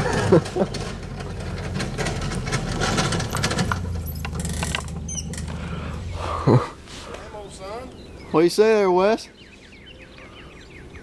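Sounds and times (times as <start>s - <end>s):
utility vehicle engine humming: 0.0s - 8.2s
loose parts clinking and rattling: 0.2s - 5.7s.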